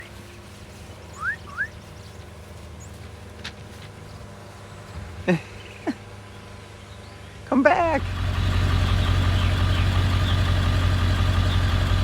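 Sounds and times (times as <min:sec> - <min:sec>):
rising bird whistles: 0:01.1 - 0:01.8.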